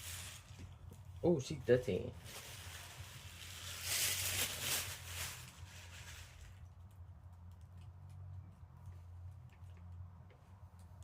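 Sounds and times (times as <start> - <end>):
rustling handling noise: 0.0 - 8.0.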